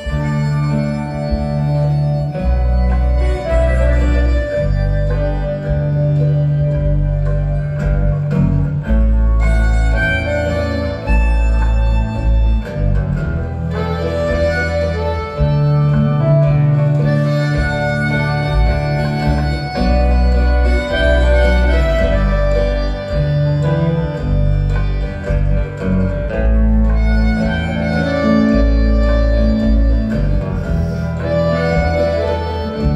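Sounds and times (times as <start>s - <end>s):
guitar: 0.0s - 32.9s
harmonica: 0.0s - 32.9s
heavy bass notes: 0.0s - 32.9s.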